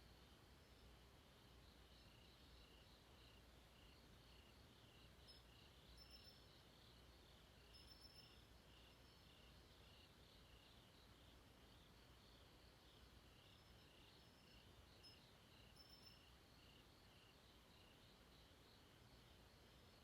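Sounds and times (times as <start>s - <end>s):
crickets chirping: 0.0s - 20.0s.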